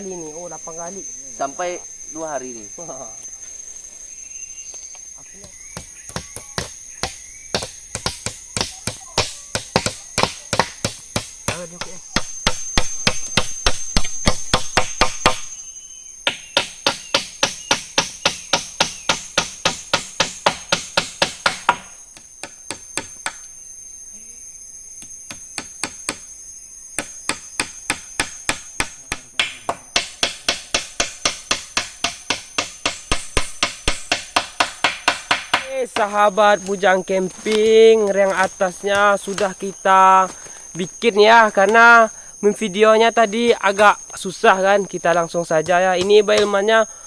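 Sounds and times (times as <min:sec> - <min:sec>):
high insect drone: 0:00.0 - 0:47.0
tool striking wood: 0:05.4 - 0:15.5, 0:16.2 - 0:23.5, 0:25.0 - 0:26.3, 0:27.0 - 0:39.6, 0:45.6 - 0:46.7.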